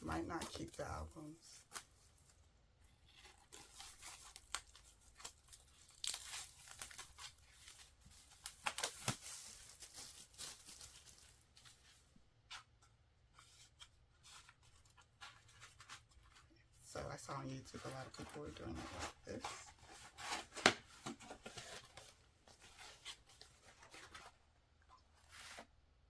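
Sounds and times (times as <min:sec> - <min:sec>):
packaging tearing and crinkling: 0:03.1 - 0:11.4.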